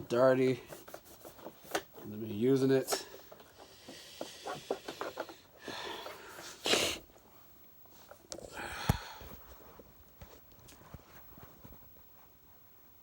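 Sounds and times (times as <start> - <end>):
loud hiss: 5.7 - 7.1.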